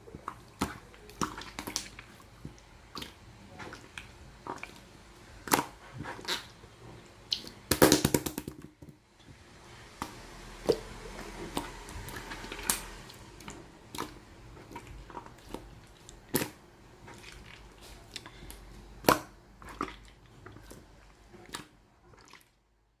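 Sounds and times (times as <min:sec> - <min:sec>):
slime squished by hand: 0:00.2 - 0:06.6.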